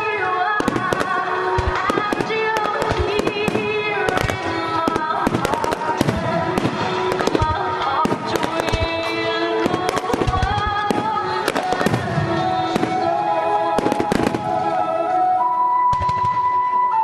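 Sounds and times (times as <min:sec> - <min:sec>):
fireworks bangs and crackling: 0:00.0 - 0:17.0
music with held notes: 0:00.0 - 0:17.0.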